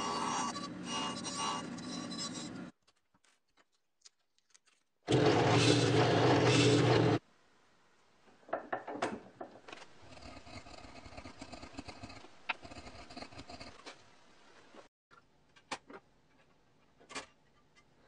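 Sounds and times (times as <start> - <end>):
woodworking power tool humming: 5.1 - 7.2.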